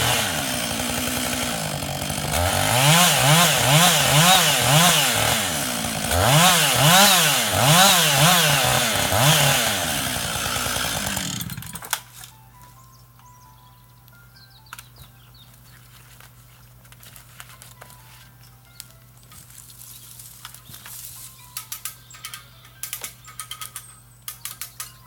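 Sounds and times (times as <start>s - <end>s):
chainsaw running: 0.0s - 12.1s.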